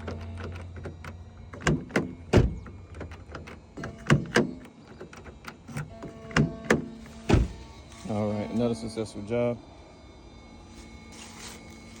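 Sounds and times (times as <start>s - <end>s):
car door locks clunking: 0.0s - 7.7s.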